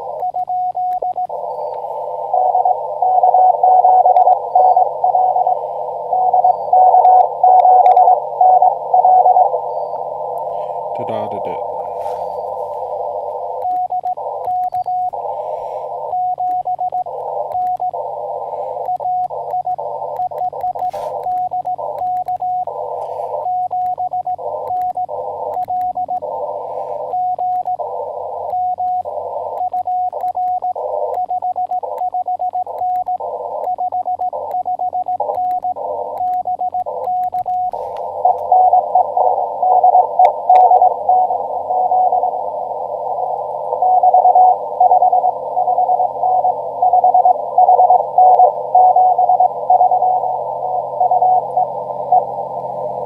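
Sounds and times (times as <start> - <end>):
morse code beeps: 0.0 - 53.0
radio band hiss: 1.3 - 3.0, 4.3 - 23.7, 26.2 - 29.6, 30.7 - 31.1, 36.9 - 53.0.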